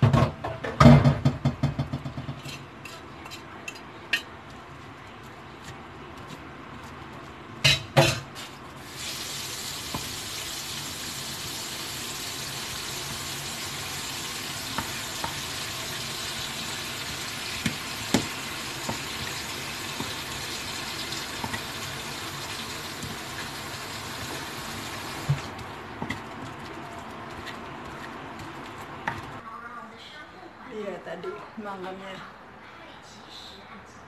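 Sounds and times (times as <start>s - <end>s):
food frying in hot oil: 7.6s - 29.2s.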